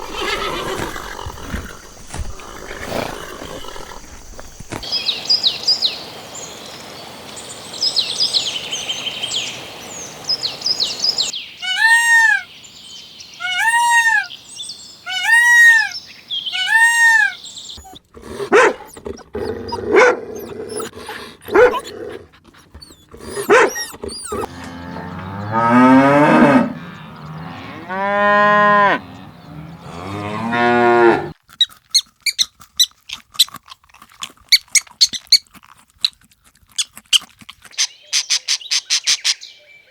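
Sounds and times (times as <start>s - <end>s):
high animal chirps: 0.0s - 4.2s, 11.6s - 12.5s, 13.4s - 14.4s, 15.0s - 27.9s
cattle mooing: 18.2s - 22.3s, 23.0s - 31.4s.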